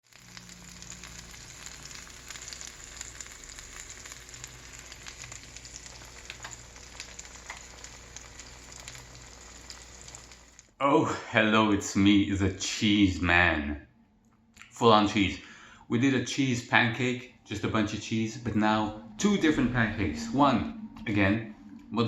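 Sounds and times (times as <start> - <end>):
cheese sizzling and crackling in pan: 0.0 - 10.7
low steady hum: 16.8 - 22.0.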